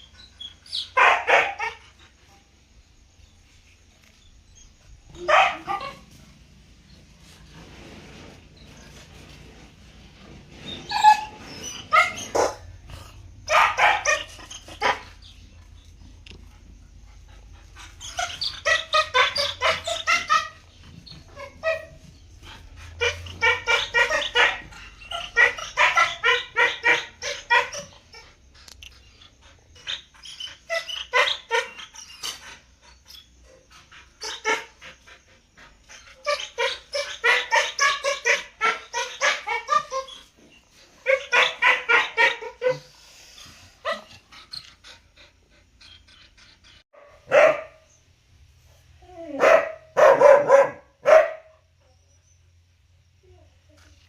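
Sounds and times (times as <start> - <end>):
dog barking: 1.0 - 1.8, 5.2 - 6.0, 11.9 - 12.7, 13.5 - 15.1, 23.0 - 27.9, 41.0 - 42.8, 47.0 - 47.9, 49.3 - 51.6.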